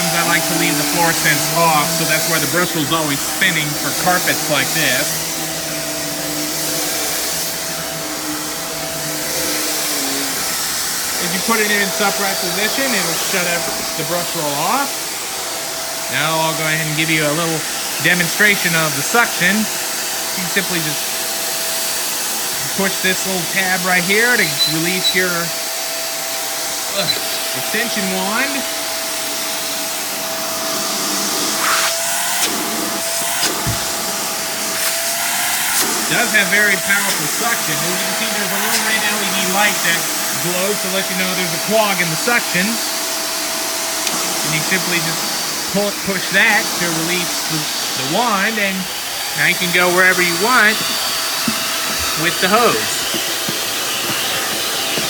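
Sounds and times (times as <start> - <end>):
rushing suction air: 0.0 - 25.6, 29.8 - 55.0
upright vacuum humming: 0.0 - 55.0
brush roll spinning on carpet: 49.4 - 55.0.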